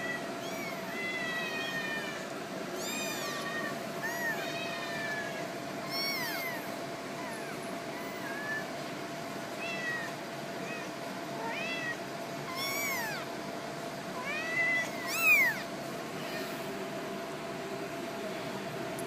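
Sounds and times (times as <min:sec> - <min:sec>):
kittens meowing: 0:00.0 - 0:08.8, 0:09.6 - 0:13.3, 0:14.2 - 0:16.6
faint steady hum: 0:00.0 - 0:19.0.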